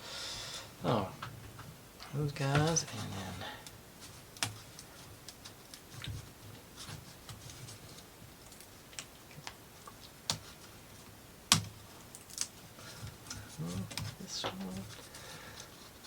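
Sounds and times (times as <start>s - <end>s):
clicks and taps of plywood pieces: 11.5s - 14.9s.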